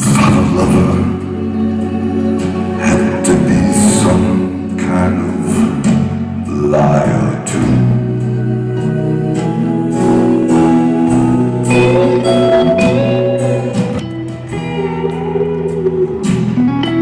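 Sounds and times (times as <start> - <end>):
guitar melody: 0.0 - 17.0
live band instrumental: 0.0 - 17.0.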